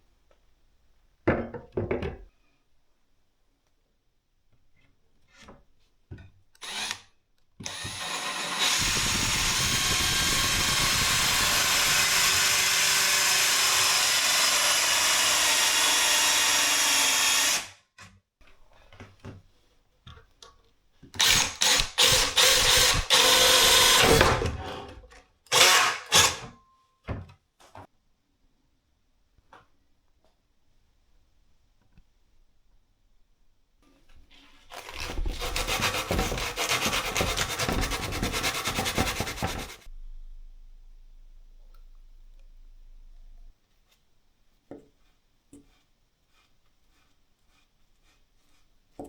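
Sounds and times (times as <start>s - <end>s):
cordless drill running: 6.6s - 7.0s, 7.6s - 17.7s, 21.2s - 24.3s.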